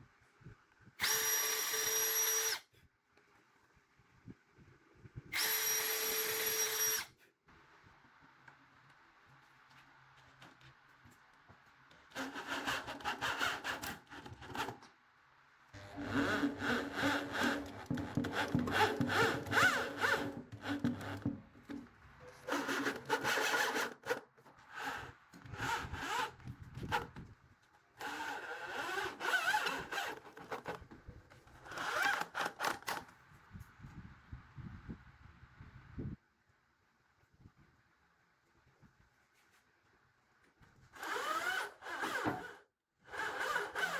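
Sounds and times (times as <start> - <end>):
hand saw cutting wood: 12.2 - 14.8, 15.8 - 21.8, 22.4 - 26.4, 28.0 - 30.8, 41.0 - 43.9.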